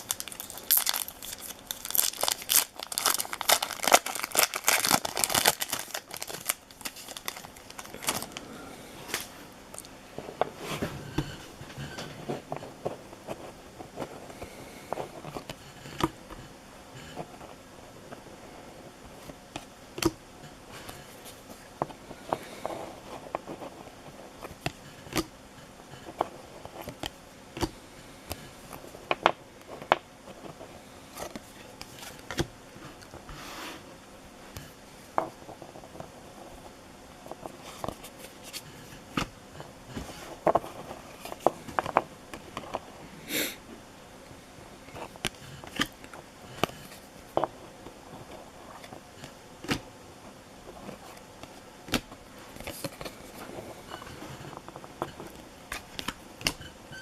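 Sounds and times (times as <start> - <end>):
cards and wrappers crinkling: 0.0 - 8.5.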